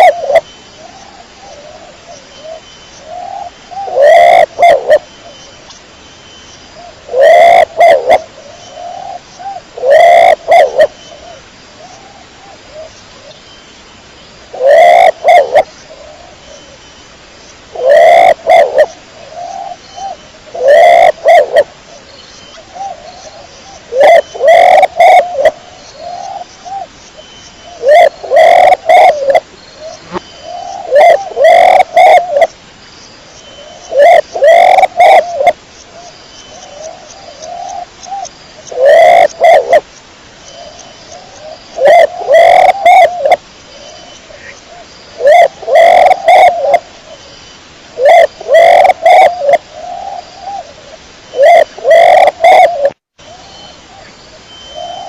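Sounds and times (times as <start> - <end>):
pigeon cooing: 3.2 - 5.0, 7.1 - 10.9, 14.5 - 16.3, 17.7 - 19.8, 20.6 - 21.7, 23.9 - 25.6, 27.8 - 29.4, 30.1 - 32.5, 33.9 - 35.6, 38.7 - 39.8, 41.8 - 43.4, 45.2 - 46.8, 48.0 - 50.7, 51.4 - 53.0.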